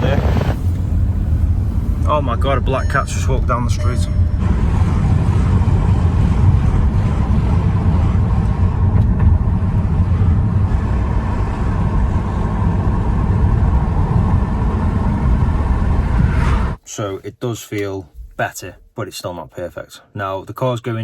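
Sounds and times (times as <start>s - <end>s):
car engine idling: 0.0s - 16.2s.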